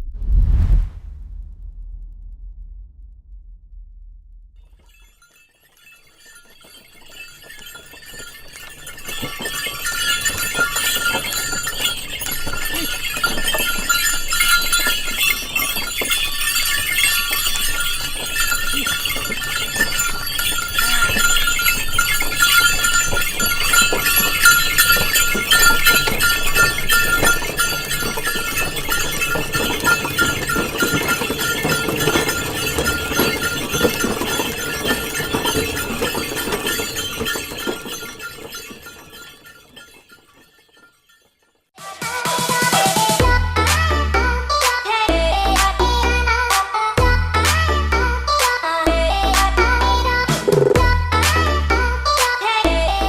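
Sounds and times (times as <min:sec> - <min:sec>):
cart bells jingling: 0:04.6 - 0:53.0
cart clattering on rough road: 0:04.8 - 0:41.5, 0:48.3 - 0:53.0.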